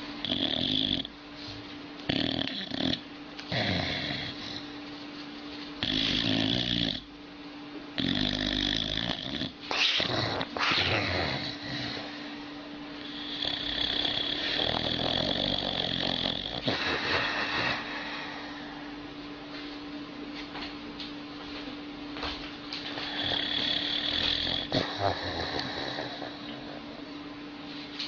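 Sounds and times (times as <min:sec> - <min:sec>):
dog snoring: 0:00.2 - 0:01.2, 0:02.0 - 0:04.7, 0:05.8 - 0:07.1, 0:08.0 - 0:18.8, 0:22.8 - 0:27.1.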